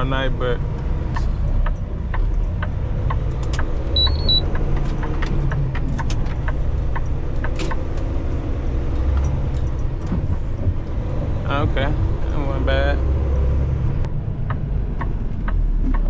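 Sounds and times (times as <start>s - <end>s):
rattles and clicks in cab: 0.0s - 12.7s, 14.0s - 16.0s
truck engine rumbling: 0.0s - 16.0s.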